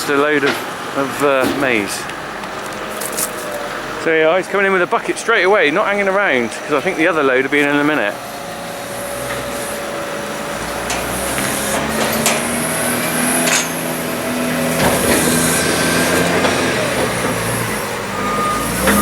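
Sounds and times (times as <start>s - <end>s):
loader diesel engine working hard: 0.0s - 19.0s
sharp knocks: 1.4s - 3.4s
reversing beeper: 17.7s - 19.0s.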